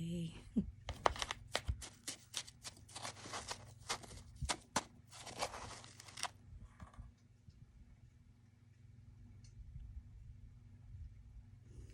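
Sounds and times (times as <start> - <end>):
crunching freezer frost: 0.9 - 6.4.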